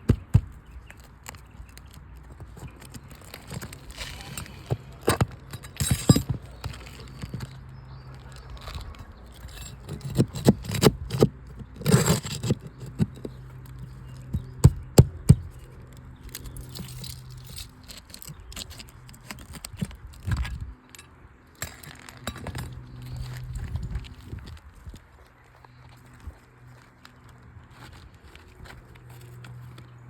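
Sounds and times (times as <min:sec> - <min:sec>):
tool scraping shingle: 0:00.0 - 0:21.0, 0:21.6 - 0:24.4.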